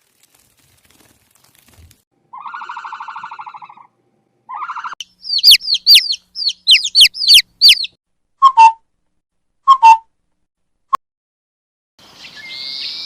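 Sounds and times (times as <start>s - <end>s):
bird trilled call: 2.4s - 3.9s, 4.5s - 8.8s, 12.2s - 13.0s
high whistled bird notes: 4.7s - 8.8s, 9.7s - 10.1s, 12.2s - 13.0s.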